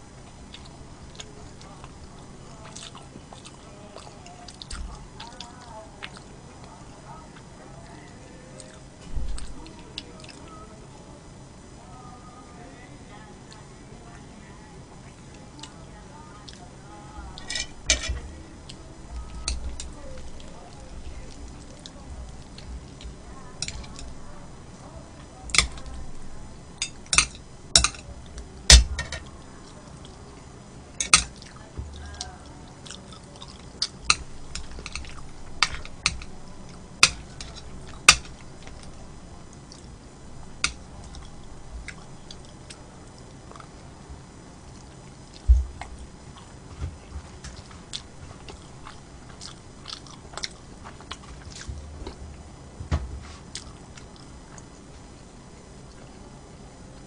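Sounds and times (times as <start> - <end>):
chewing and wet mouth sounds: 0.3 - 10.6, 16.4 - 28.6, 29.2 - 52.2, 53.4 - 55.0.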